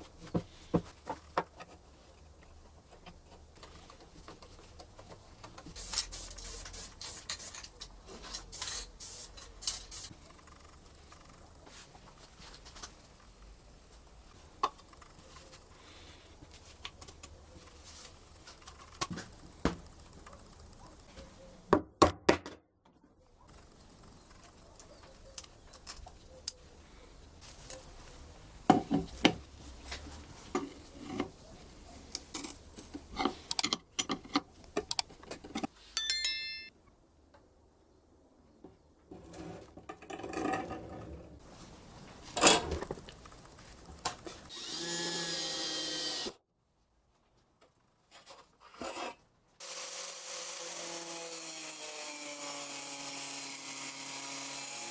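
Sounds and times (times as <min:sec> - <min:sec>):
metal tools clinking: 0:36.0 - 0:36.7.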